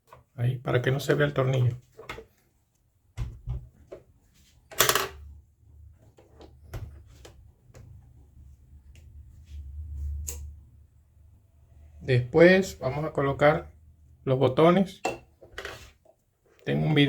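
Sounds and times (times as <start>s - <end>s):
plastic parts clicking and knocking: 4.7s - 5.3s.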